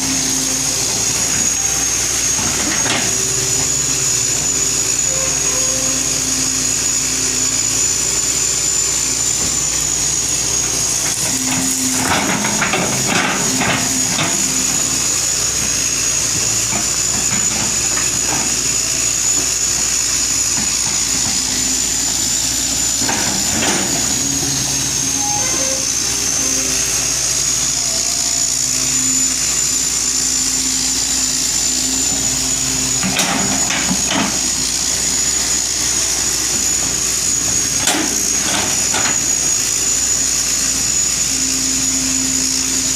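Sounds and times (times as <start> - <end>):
excavator engine running: 0.0 - 42.9
high whine: 0.0 - 42.9
metallic clanking: 11.1 - 19.4.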